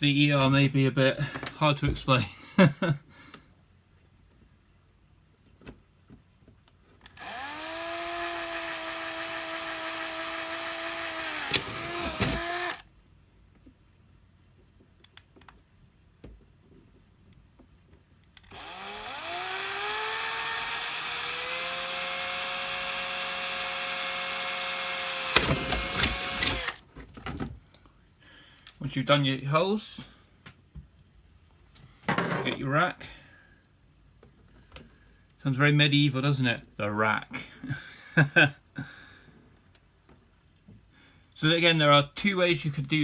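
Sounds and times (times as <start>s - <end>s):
electric drill whining: 7.0s - 12.9s, 18.4s - 26.8s.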